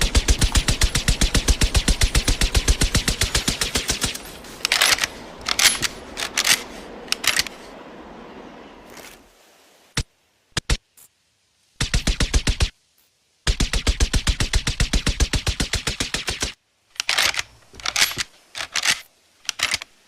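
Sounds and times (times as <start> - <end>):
metallic clicks and clatter: 0.0 - 7.6, 14.2 - 20.0.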